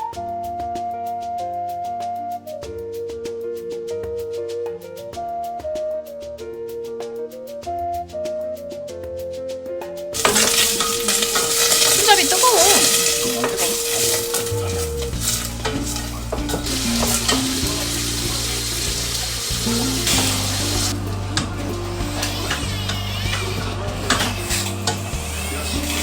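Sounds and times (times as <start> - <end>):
background music: 0.0 - 26.0
food sizzling in a pan: 10.2 - 26.0.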